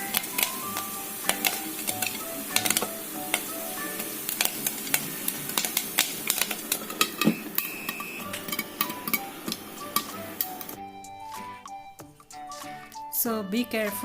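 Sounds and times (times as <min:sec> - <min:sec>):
grains popping in a pan: 0:00.0 - 0:10.8
oil sizzling hiss: 0:00.0 - 0:10.8.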